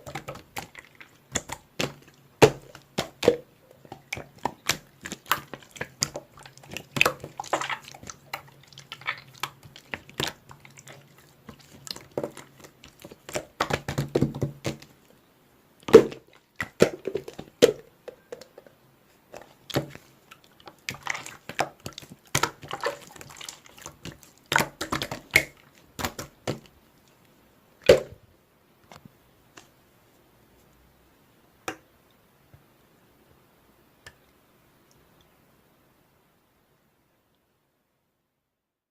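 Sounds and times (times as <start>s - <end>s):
slime squished by hand: 0.0s - 14.9s, 19.3s - 26.7s
wet clicks and pops: 0.0s - 14.9s, 19.3s - 26.7s, 27.8s - 28.2s.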